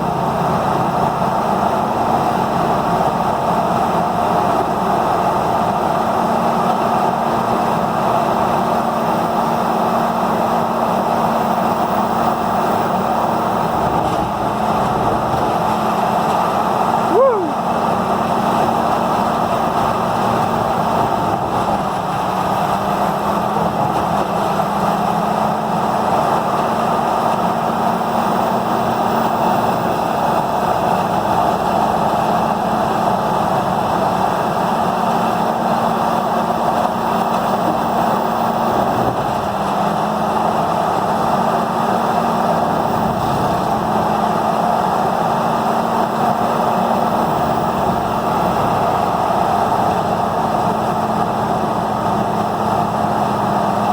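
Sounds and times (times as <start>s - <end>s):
diesel engine droning: 0.0s - 53.9s
grinding mill rushing: 11.7s - 22.9s.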